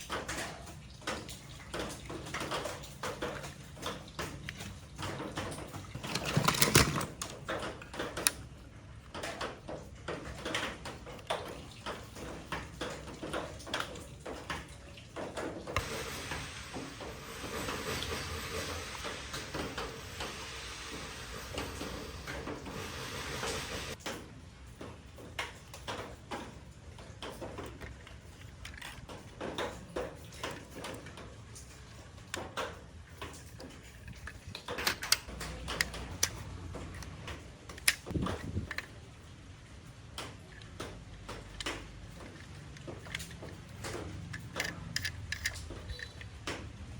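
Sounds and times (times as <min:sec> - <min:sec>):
plastic toy clicks and knocks: 0:02.4 - 0:08.5, 0:27.2 - 0:31.2, 0:33.6 - 0:39.0, 0:40.2 - 0:46.7.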